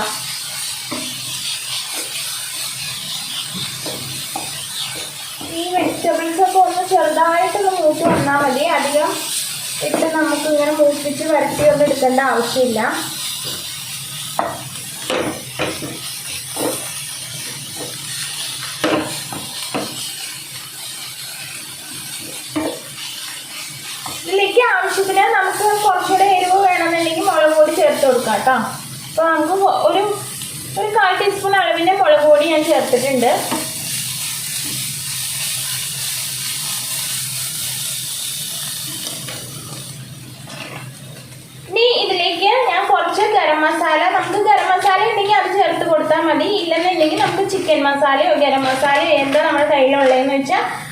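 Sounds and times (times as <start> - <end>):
spatula scraping a pan: 0.0 - 28.4, 32.4 - 41.3
vegetables sizzling in a pan: 0.0 - 50.9.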